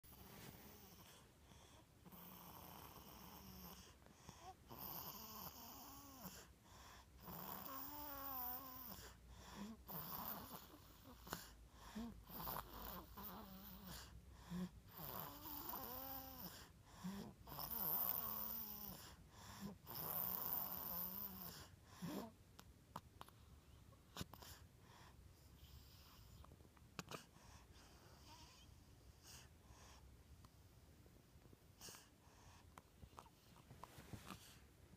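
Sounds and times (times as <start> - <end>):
snoring with pitched tone: 17.5 - 19.0.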